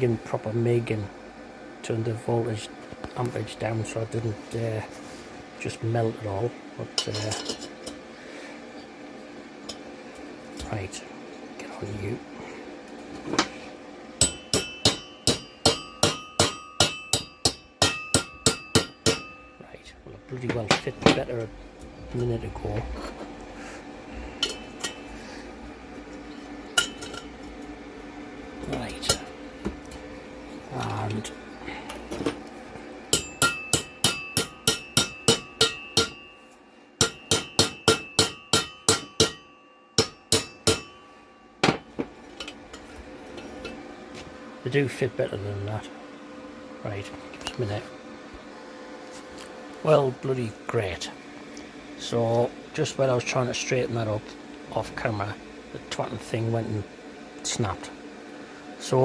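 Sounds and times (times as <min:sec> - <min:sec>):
hammer striking steel: 0:14.2 - 0:19.5, 0:33.1 - 0:36.4, 0:37.0 - 0:41.8.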